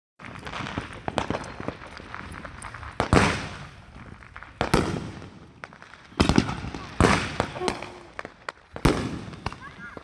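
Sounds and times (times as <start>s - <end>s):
fireworks crackling pops: 0.2s - 10.0s
loud firework bang: 6.2s - 9.7s.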